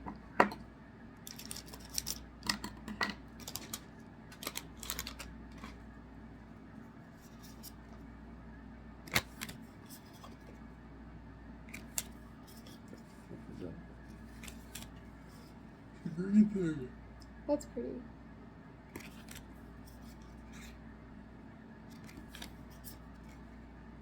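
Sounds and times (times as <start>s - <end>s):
cards rustling: 1.3s - 2.6s, 3.3s - 5.9s, 7.1s - 8.0s, 9.0s - 10.6s, 11.7s - 13.3s, 14.1s - 15.6s, 18.9s - 20.8s, 21.9s - 23.5s
cards clicking: 1.3s - 5.8s, 9.0s - 10.3s, 11.7s - 12.9s, 14.4s - 15.0s, 18.9s - 20.7s, 21.9s - 23.3s.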